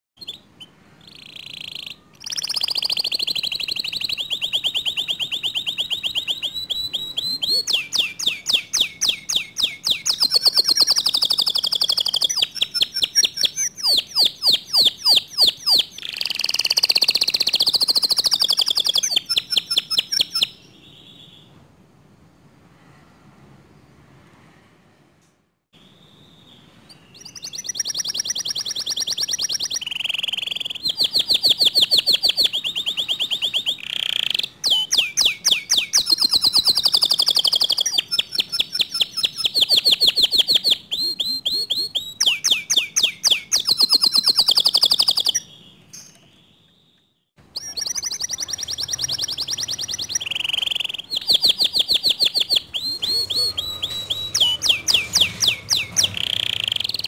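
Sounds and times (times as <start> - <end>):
canary singing trills: 0.2 - 21.5, 25.8 - 57.0.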